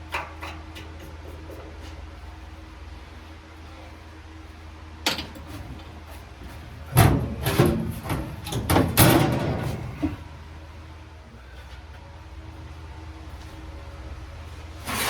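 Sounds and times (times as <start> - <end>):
loud bangs and clatters: 6.9 - 10.3.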